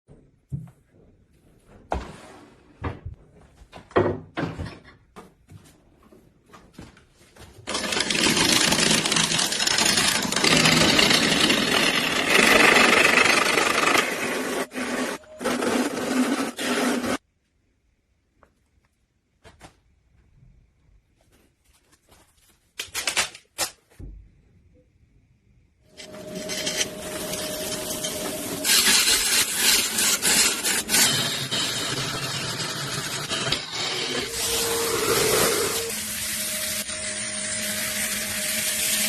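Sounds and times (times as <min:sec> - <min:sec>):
power tool cutting wood: 0:07.7 - 0:17.2, 0:26.0 - 0:39.0.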